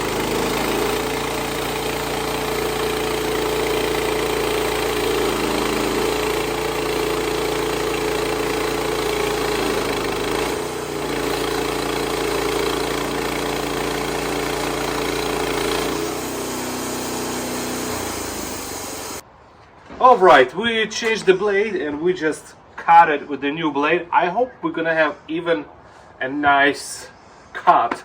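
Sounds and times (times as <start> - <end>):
sawmill engine running: 0.0 - 19.2.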